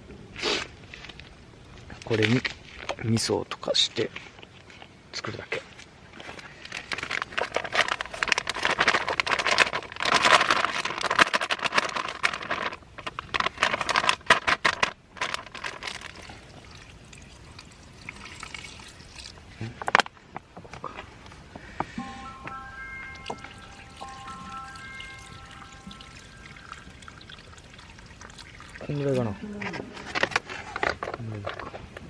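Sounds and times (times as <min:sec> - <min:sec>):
liquid pouring into pot: 0:16.1 - 0:19.5, 0:23.4 - 0:29.2.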